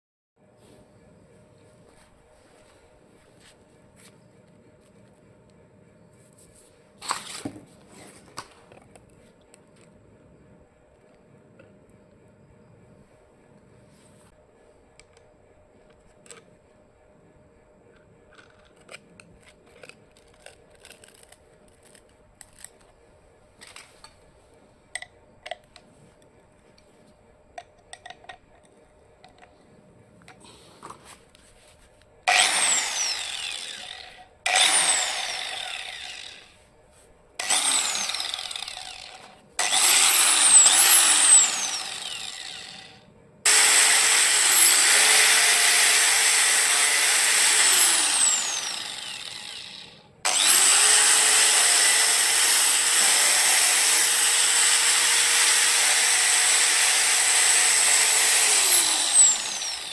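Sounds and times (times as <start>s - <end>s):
angle grinder running: 32.3s - 36.6s, 37.4s - 59.9s.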